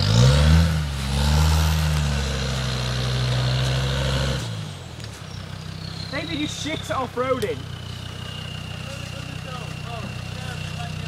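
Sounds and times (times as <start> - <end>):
engine revving hard: 0.0 - 4.8.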